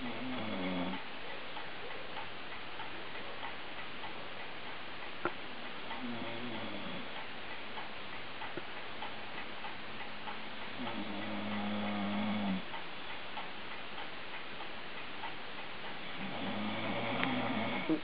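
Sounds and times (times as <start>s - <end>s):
person snoring: 0.0s - 1.0s, 6.0s - 7.1s, 16.2s - 18.0s
steady ticking: 0.0s - 18.0s.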